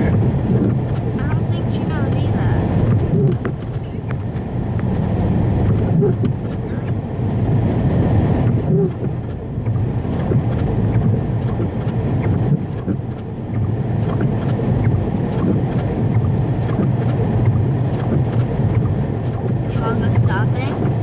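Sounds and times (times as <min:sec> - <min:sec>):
car engine and tyre rumble: 0:00.0 - 0:21.0.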